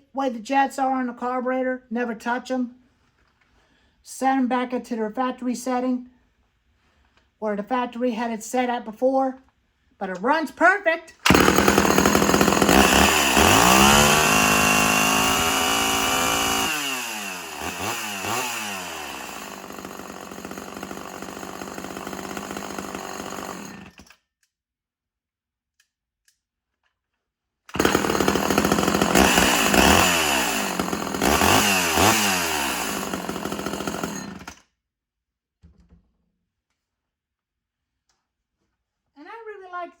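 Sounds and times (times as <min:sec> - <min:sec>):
chainsaw engine revving: 0:11.2 - 0:24.1, 0:27.7 - 0:34.6.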